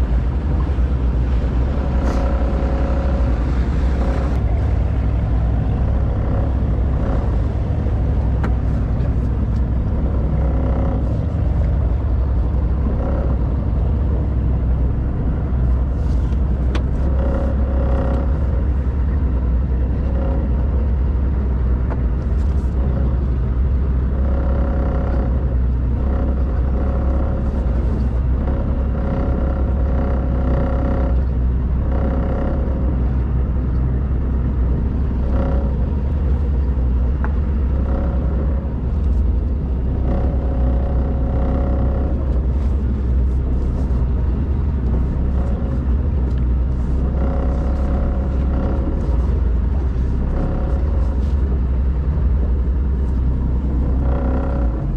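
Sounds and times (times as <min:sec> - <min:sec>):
boat engine droning: 0:00.0 - 0:54.9.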